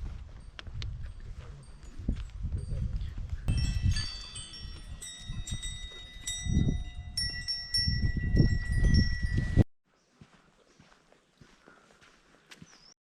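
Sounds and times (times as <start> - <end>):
metal bells ringing: 0.4 - 2.9, 3.5 - 9.6.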